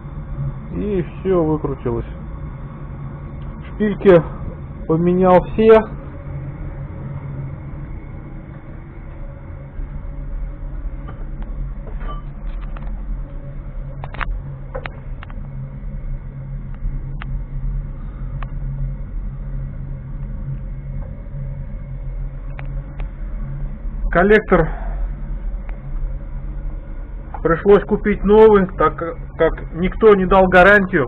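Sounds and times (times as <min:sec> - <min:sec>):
low mechanical hum: 0:00.0 - 0:31.0.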